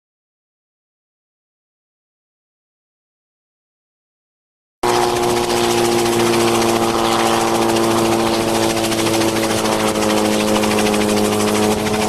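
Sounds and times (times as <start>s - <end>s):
helicopter engine and rotor hum: 4.8s - 12.0s.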